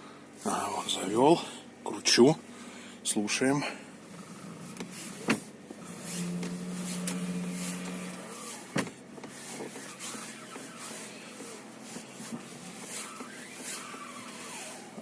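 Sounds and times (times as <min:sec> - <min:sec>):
power steering hum: 0:00.0 - 0:15.0
sharp creaks: 0:05.8 - 0:15.0.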